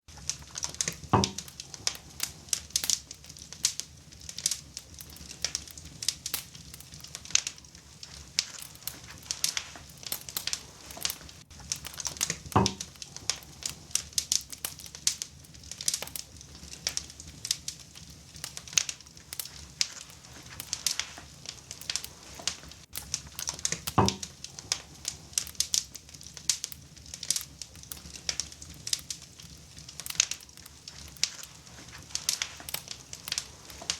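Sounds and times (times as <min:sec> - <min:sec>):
wood fire crackling: 0:00.0 - 0:33.9
louder dull fire pops: 0:00.1 - 0:33.9.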